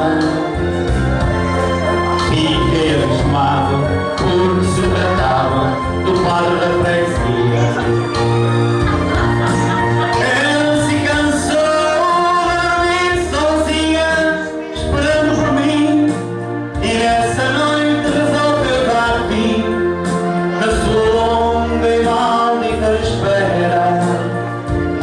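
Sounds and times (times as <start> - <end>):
person singing: 0.0 - 25.0
steady bass line: 0.0 - 25.0.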